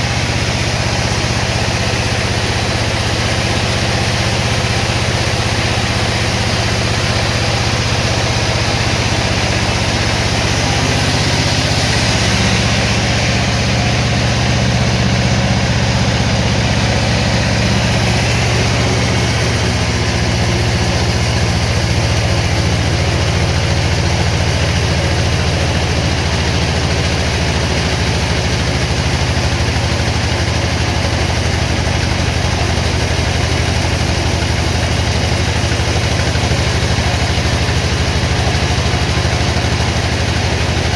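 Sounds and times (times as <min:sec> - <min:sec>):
sawmill machinery humming: 0:00.0 - 0:40.9
higher-pitched machine noise: 0:07.2 - 0:23.6.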